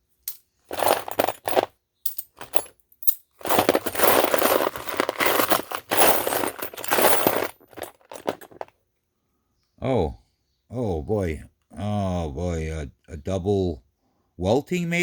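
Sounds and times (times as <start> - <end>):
small metal parts clinking: 0.2 - 8.7.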